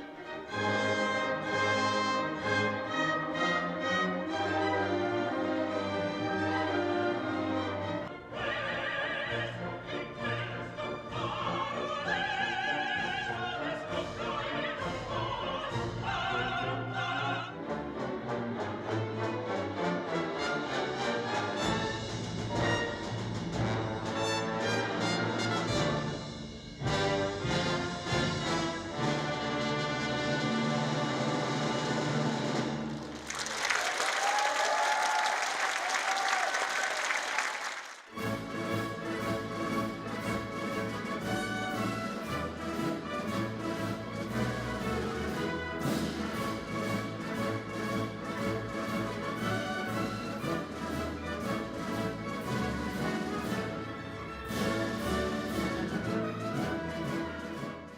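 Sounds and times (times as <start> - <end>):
orchestra playing operatic piece: 0.0 - 35.1, 38.0 - 57.9
audience applauding: 32.9 - 38.2.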